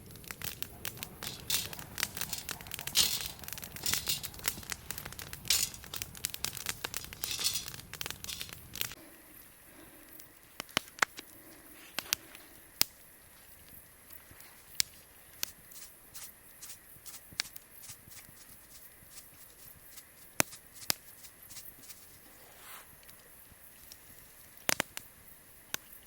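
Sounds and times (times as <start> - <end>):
dense crinkling and crackling: 0.0 - 9.0
sharp pops: 0.0 - 9.0, 14.8 - 22.0, 24.6 - 25.1.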